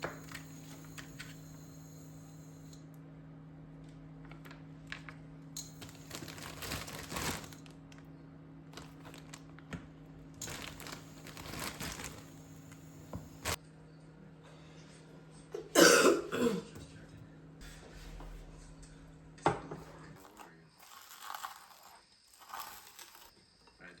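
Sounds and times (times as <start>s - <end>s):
crinkling and rustling: 4.3s - 8.1s, 8.7s - 13.6s, 20.2s - 23.3s
low hum: 16.8s - 20.8s.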